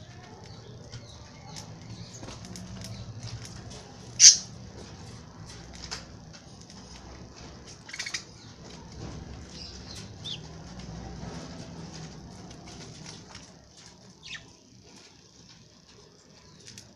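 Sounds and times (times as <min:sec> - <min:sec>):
lovebirds chirping and calling: 0:00.0 - 0:04.9, 0:07.0 - 0:10.6, 0:14.2 - 0:14.5.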